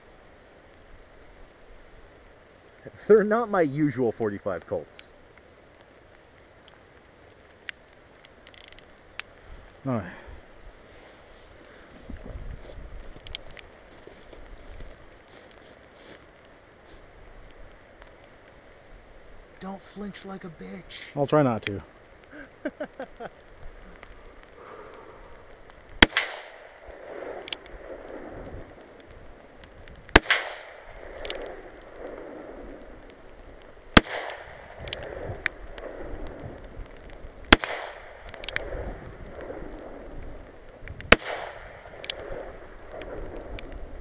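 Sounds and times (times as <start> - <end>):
faint crack: 6.6 - 9.4, 11.0 - 18.8, 21.6 - 43.8
gunshots: 26.0 - 27.6, 30.1 - 31.6, 33.9 - 36.1, 37.5 - 38.7, 41.1 - 43.1.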